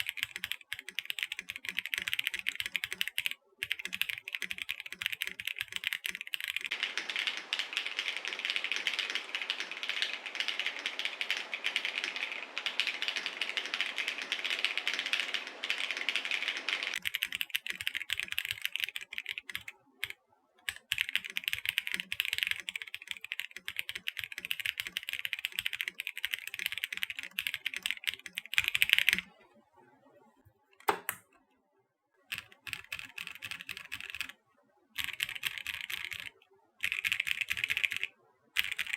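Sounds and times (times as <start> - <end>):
mechanical keyboard typing: 0.0 - 29.3, 30.8 - 31.3, 32.3 - 34.4, 35.0 - 38.9.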